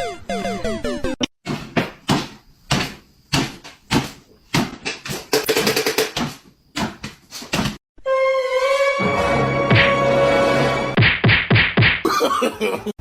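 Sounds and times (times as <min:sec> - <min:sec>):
knocks and thumps: 0:01.4 - 0:07.8.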